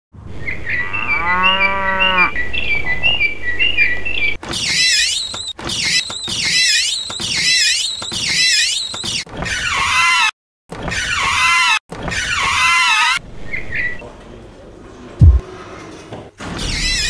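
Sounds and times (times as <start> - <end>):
toy car squeaking: 4.5 - 10.3, 16.6 - 17.0.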